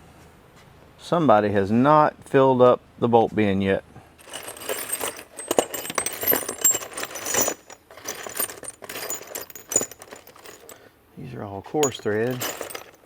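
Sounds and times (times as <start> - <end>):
nuts and bolts clinking: 4.2 - 10.8, 11.6 - 13.0.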